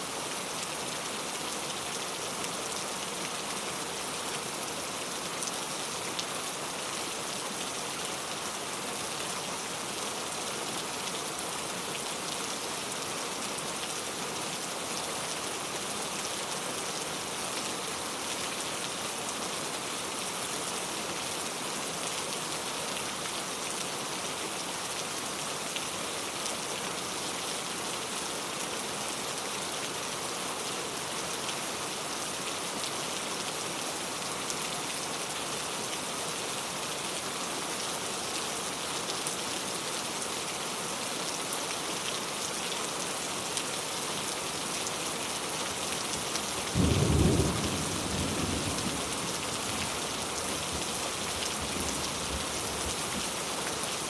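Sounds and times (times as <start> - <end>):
steady rain hiss: 0.0 - 54.0
low rumble of thunder: 46.8 - 49.4.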